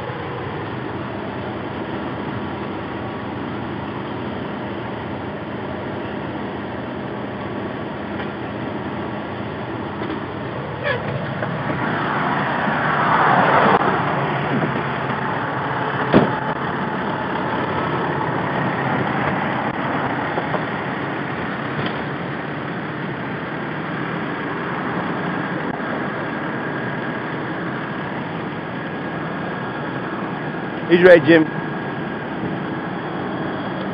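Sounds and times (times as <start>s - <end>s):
fire engine motor idling: 0.0s - 12.9s, 13.6s - 33.9s
sharp pop: 16.1s - 16.4s.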